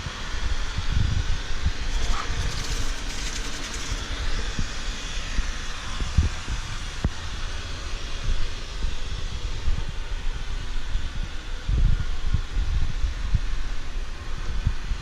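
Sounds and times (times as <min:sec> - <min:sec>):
robot vacuum whirring: 0:01.7 - 0:05.9.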